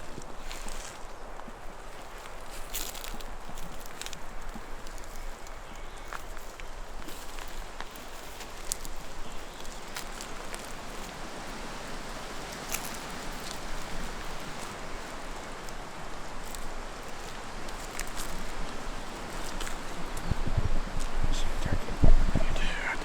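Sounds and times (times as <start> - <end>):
wind rustling through leaves: 0.0 - 23.0
faint ticks and snaps: 0.2 - 21.2.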